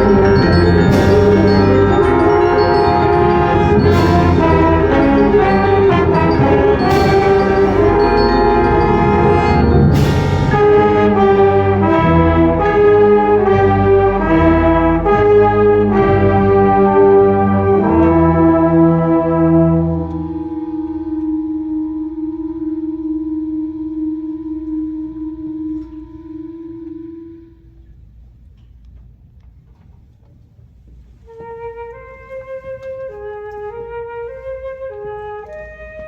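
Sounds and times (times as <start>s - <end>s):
cymbal crashes: 0.0s - 12.3s
brass playing held chords: 0.0s - 28.0s
live ensemble music: 0.0s - 28.2s, 31.3s - 36.0s.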